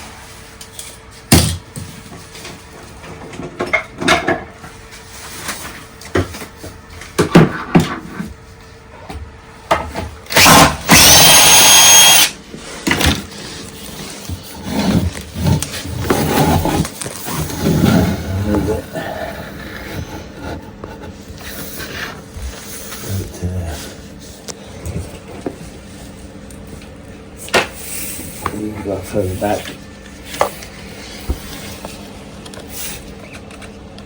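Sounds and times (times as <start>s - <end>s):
cordless drill driving screw: 10.3s - 12.4s.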